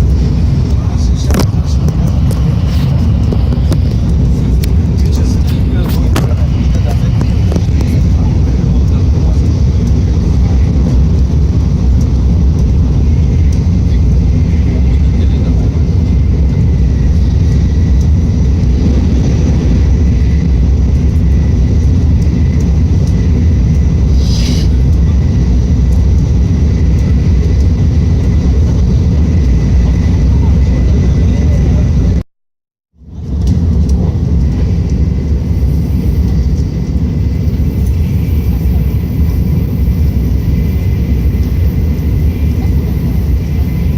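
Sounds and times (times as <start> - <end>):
faint steady whine: 0.0 - 32.2, 33.1 - 43.9
train rumble inside cabin: 0.0 - 32.2, 33.0 - 43.9
brief hiss: 24.1 - 24.8.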